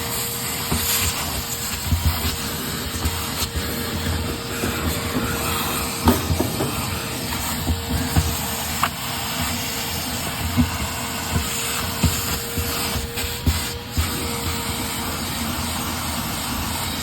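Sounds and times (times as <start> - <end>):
machine hissing and humming: 0.0 - 17.0
tools knocking and tapping: 2.9 - 9.5.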